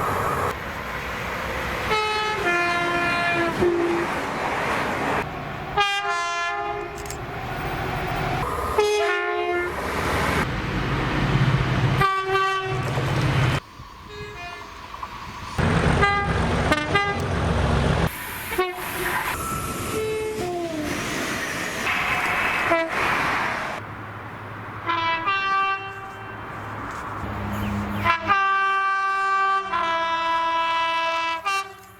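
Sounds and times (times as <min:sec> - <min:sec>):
trains rumbling: 0:00.0 - 0:31.9
locomotive air horns: 0:01.9 - 0:04.1, 0:05.8 - 0:07.0, 0:08.4 - 0:09.8, 0:12.0 - 0:12.9, 0:14.0 - 0:14.8, 0:16.0 - 0:17.3, 0:18.4 - 0:21.0, 0:21.8 - 0:23.8, 0:24.9 - 0:26.5, 0:28.0 - 0:31.9.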